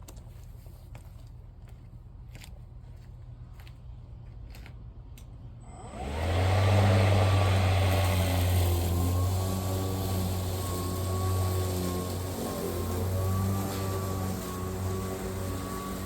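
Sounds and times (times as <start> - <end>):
electric lawnmower whining and humming: 5.6 - 16.0.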